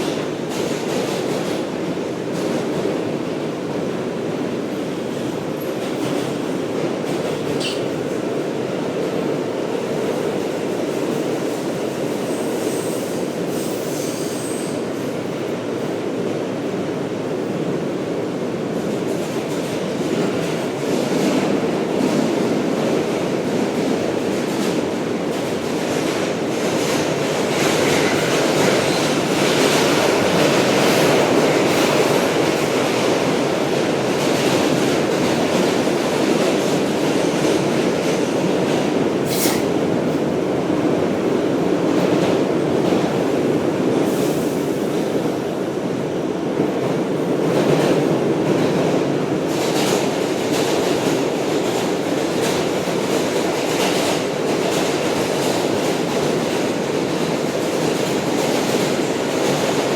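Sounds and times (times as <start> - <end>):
brief high squeal: 7.6 - 8.0.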